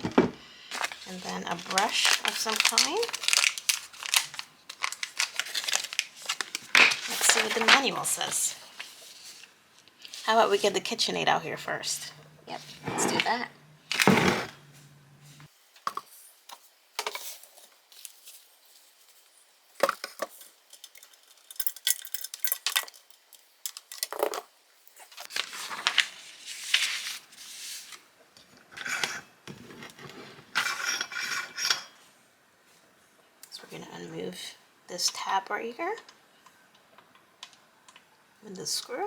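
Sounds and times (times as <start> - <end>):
scraping on counter: 12.6 - 13.4, 14.0 - 14.6.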